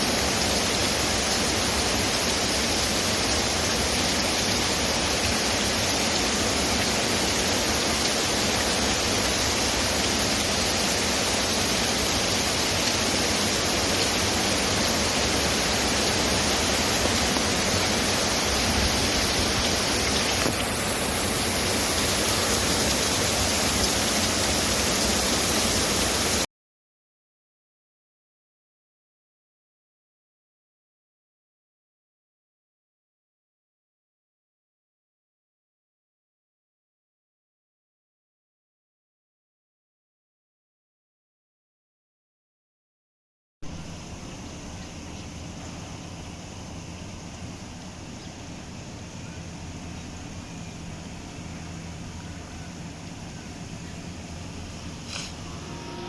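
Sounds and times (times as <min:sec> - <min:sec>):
heavy rain falling: 0:00.0 - 0:26.5, 0:45.4 - 0:55.8.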